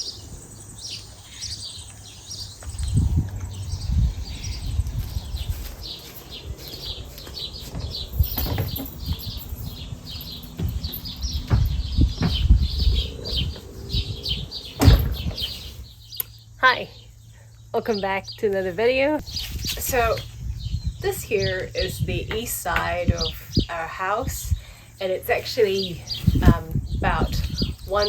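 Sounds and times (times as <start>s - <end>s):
birds chirping: 0.0s - 28.0s.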